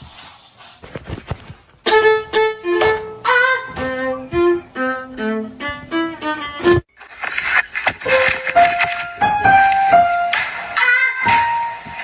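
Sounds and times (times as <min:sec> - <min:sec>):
bowed-string melody: 0:01.9 - 0:06.8.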